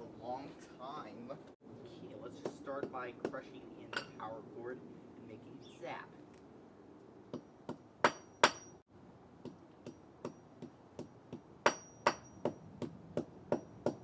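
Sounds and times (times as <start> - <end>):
high metallic ping: 8.1 - 8.8, 11.7 - 12.6.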